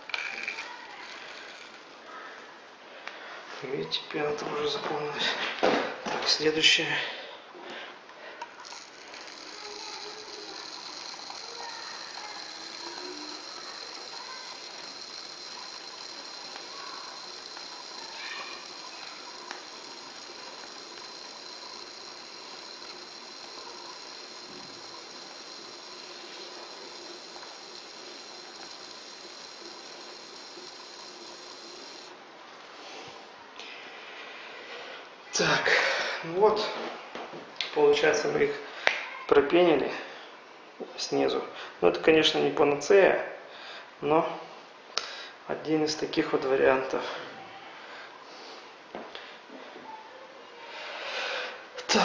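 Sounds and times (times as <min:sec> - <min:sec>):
foam gun hissing: 0:08.6 - 0:32.1.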